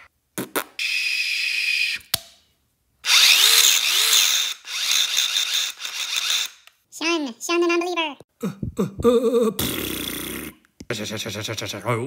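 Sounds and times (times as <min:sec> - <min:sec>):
power drill whine: 0:03.0 - 0:06.6
drill click: 0:03.1 - 0:06.8.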